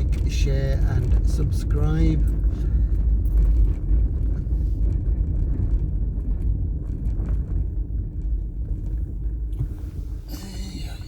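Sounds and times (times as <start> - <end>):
car engine running inside cabin: 0.0 - 11.0.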